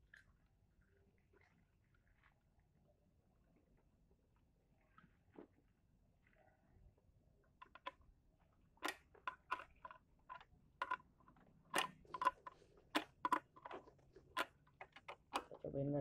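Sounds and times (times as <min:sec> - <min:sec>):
plastic connectors clicking: 0:11.7 - 0:15.6.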